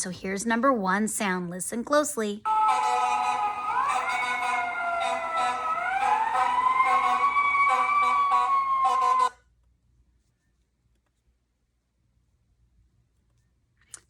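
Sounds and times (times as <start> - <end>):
emergency vehicle siren wailing: 2.5 - 9.4.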